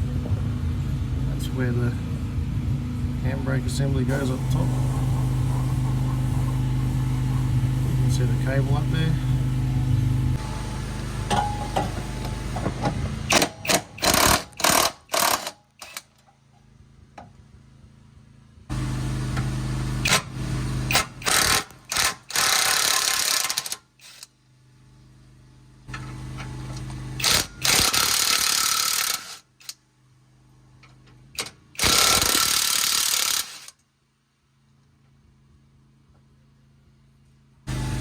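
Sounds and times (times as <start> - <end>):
power tool running: 3.8 - 16.1, 18.7 - 24.3, 25.9 - 29.8, 31.4 - 33.8, 37.7 - 38.0.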